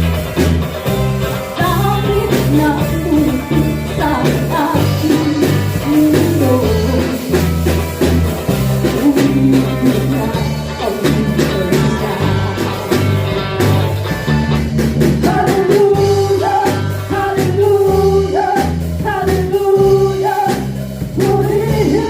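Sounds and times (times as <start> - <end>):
bass line: 0.0 - 22.0
church band music: 0.0 - 22.0
drum kit steady beat: 0.0 - 22.0
guitar: 0.0 - 22.0
person singing: 1.6 - 7.4, 8.8 - 13.2, 15.2 - 22.0.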